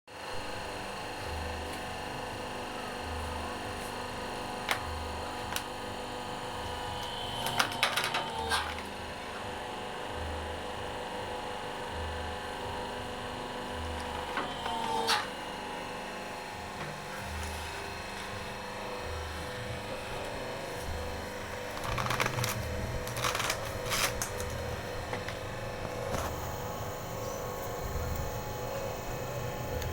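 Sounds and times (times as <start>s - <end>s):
hydraulic press motor and pump: 4.7s - 9.2s, 13.1s - 15.9s, 16.7s - 29.9s.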